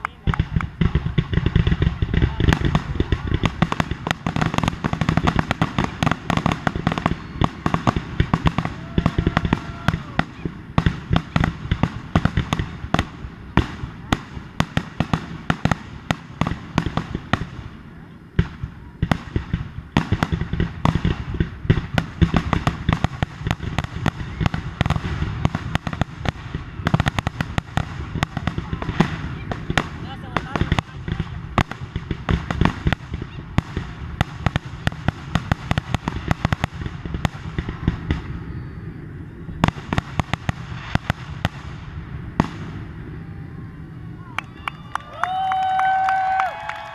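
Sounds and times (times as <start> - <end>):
fireworks bursting and crackling: 0.0 - 46.9.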